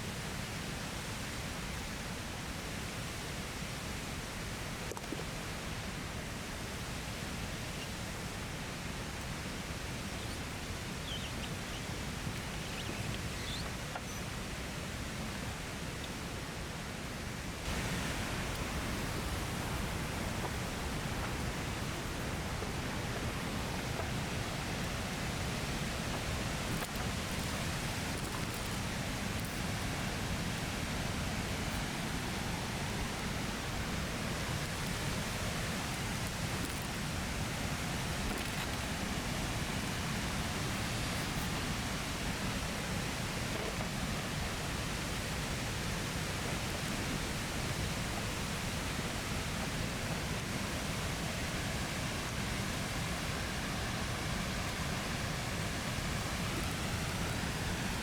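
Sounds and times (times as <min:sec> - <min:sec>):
waterfall rushing: 0:17.6 - 0:58.0.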